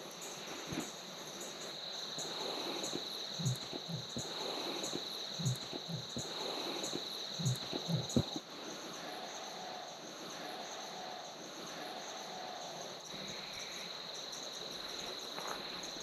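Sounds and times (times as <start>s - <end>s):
insects chirping: 0.0s - 16.0s
dull low thuds: 3.4s - 6.4s, 7.4s - 8.4s.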